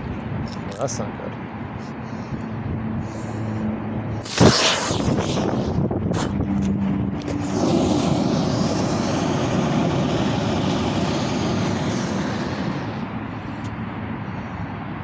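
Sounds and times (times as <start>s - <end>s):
battery venting with loud hiss: 4.2s - 13.7s.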